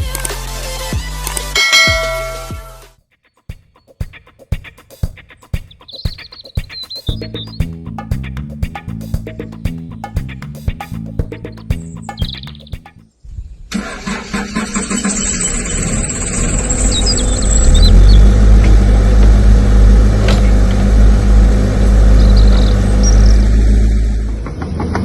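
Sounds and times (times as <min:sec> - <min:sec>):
birds chirping faintly: 0:05.3 - 0:07.7, 0:11.3 - 0:13.6
model diesel engine rumbling: 0:13.7 - 0:25.0.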